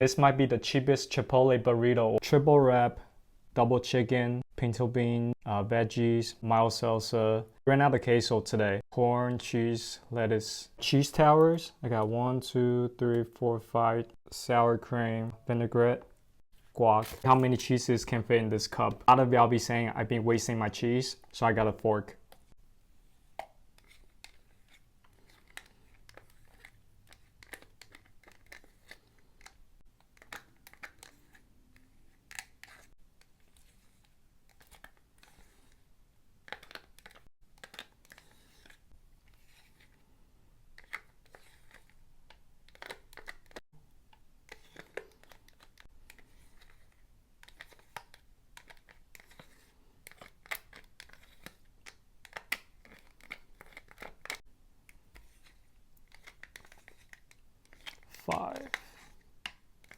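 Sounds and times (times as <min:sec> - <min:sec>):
wrapper crinkling and tearing: 0:17.0 - 0:17.6.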